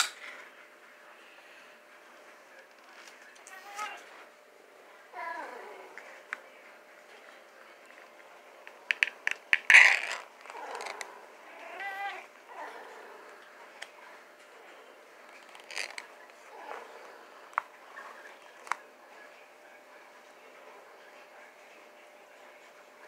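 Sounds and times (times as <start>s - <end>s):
cat meowing: 11.5s - 12.3s.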